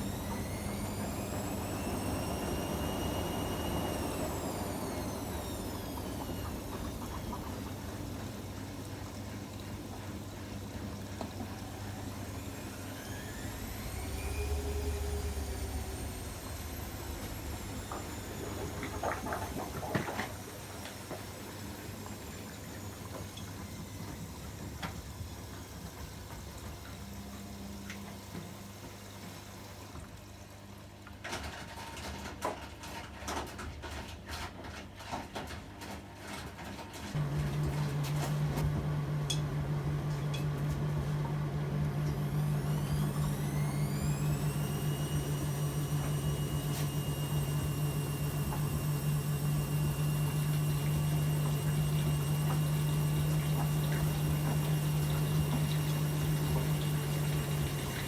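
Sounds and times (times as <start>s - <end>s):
motor whine: 0.0s - 24.3s, 37.2s - 58.0s
pump hum: 0.0s - 31.4s, 37.1s - 58.0s
water sloshing: 16.7s - 20.6s.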